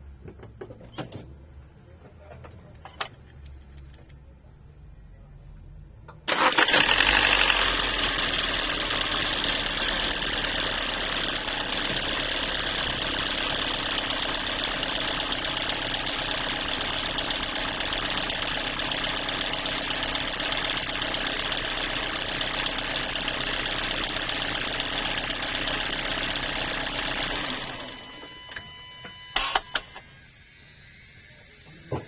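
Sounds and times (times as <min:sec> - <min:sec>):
car engine idling: 0:06.3 - 0:28.2.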